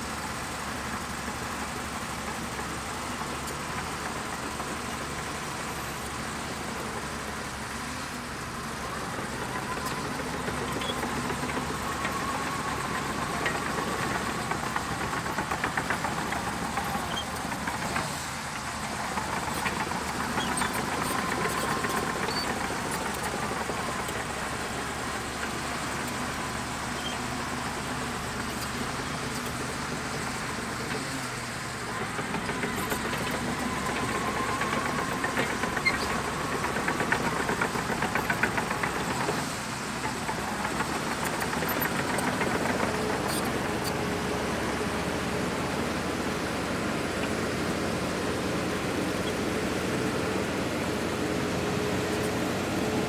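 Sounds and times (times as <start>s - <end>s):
bulldozer diesel engine whining: 0.0s - 53.0s.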